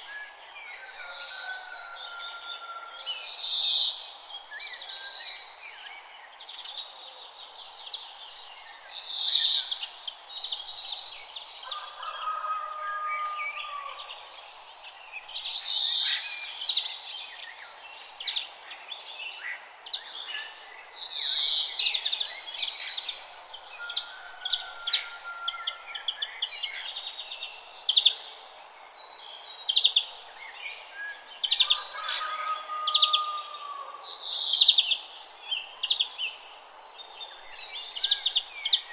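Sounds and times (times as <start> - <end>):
birds chirping and trilling: 20.2 - 38.9.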